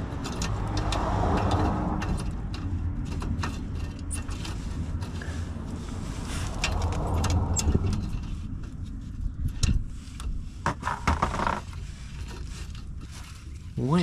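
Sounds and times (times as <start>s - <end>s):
metal tools clinking and scraping: 0.0s - 8.4s
steady low rumble: 0.0s - 10.7s.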